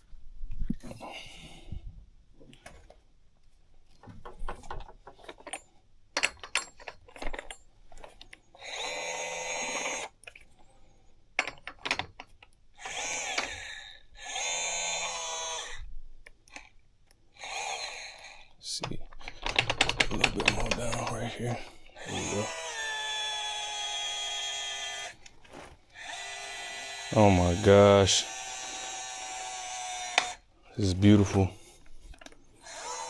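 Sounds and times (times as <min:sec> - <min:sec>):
tool handling clicks and knocks: 0:03.9 - 0:08.4, 0:11.4 - 0:13.6, 0:18.8 - 0:22.0
small power tool motor running: 0:08.6 - 0:10.1, 0:12.8 - 0:15.8, 0:17.3 - 0:18.5, 0:21.9 - 0:31.4, 0:32.6 - 0:33.0.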